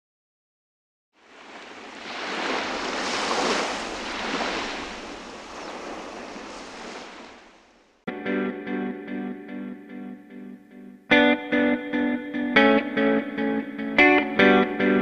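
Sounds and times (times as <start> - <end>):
rushing surf-like noise: 1.2 - 7.9.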